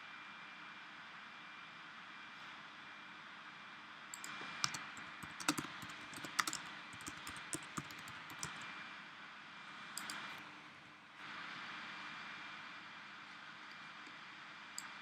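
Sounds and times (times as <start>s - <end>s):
keyboard typing clicks: 4.1s - 8.7s, 10.0s - 10.4s.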